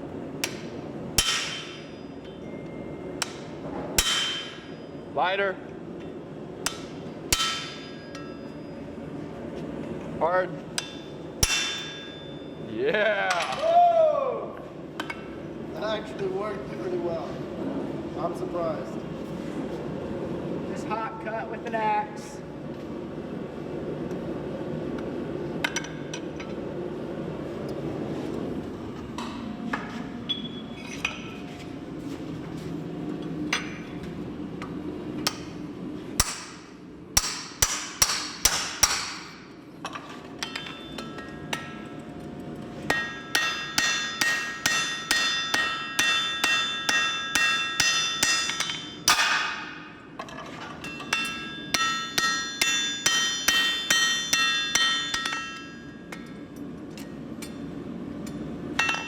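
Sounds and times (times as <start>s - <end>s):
hammer ringing on anvil: 1.2s - 4.9s, 6.7s - 8.8s, 10.8s - 12.6s, 36.2s - 39.4s, 40.4s - 41.8s, 42.9s - 49.9s, 50.8s - 56.3s, 58.8s - 59.0s.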